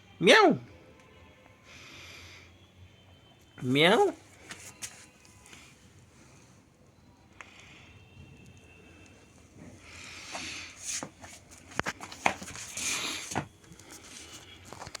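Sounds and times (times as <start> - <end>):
rustling and scraping: 4.4 - 5.7, 9.6 - 15.0.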